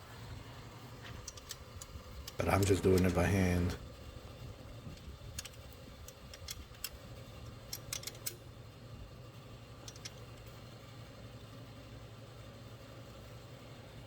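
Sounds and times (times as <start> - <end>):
faint steady hum: 0.0 - 14.0
metallic clicks of hand wrench: 1.2 - 3.2, 4.9 - 7.0, 7.7 - 8.4, 9.8 - 10.3.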